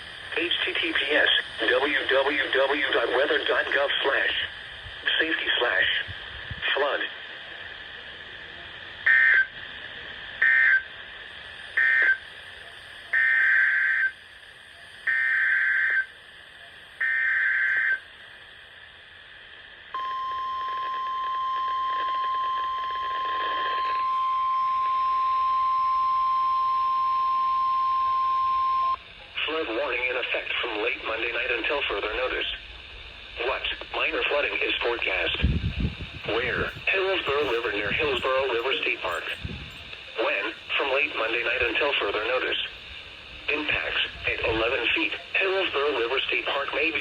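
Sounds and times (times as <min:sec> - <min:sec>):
buzzing data bursts: 0:35.1 - 0:47.0.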